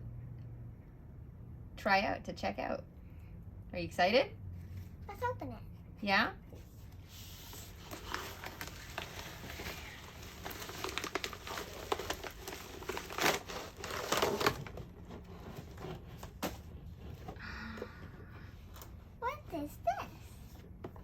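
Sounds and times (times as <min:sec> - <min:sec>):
wrapping crinkling and rustling: 0:06.6 - 0:17.4.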